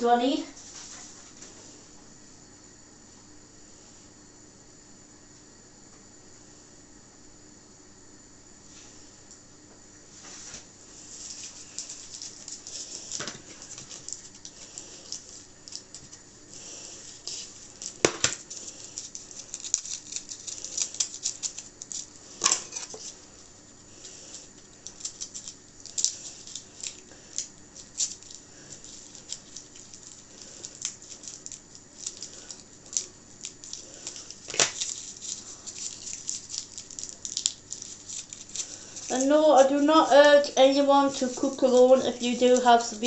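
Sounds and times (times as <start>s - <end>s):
utensils clicking and crackling: 11.2s - 43.0s.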